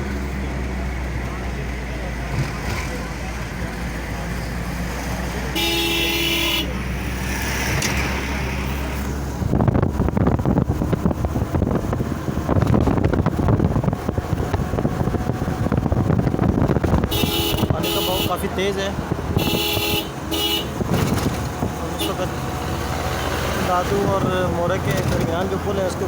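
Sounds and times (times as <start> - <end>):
vehicle engine and road noise: 0.0 - 26.0
car horn honking: 5.5 - 7.0, 17.0 - 18.5, 19.3 - 21.0, 21.9 - 22.4
rough rushing noise: 6.6 - 25.7.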